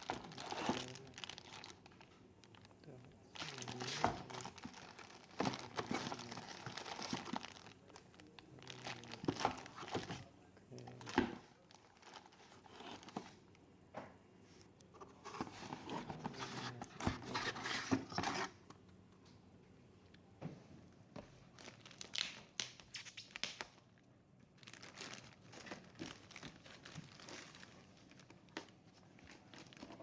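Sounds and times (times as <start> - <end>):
packaging rustling and tearing: 0.0 - 2.7, 3.3 - 13.4, 15.0 - 18.6, 24.6 - 28.5.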